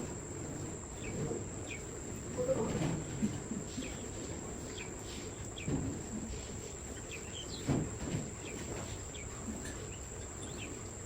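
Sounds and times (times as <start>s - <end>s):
small birds chirping: 6.9s - 7.7s, 8.4s - 11.0s.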